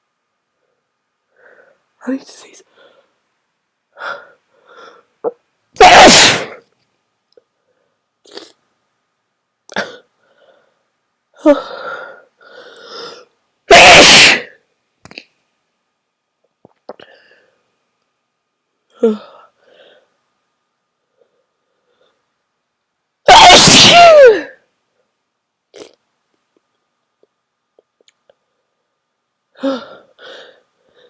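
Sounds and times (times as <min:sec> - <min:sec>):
person sneezing: 0:05.8 - 0:06.6, 0:13.7 - 0:14.5, 0:23.3 - 0:24.5.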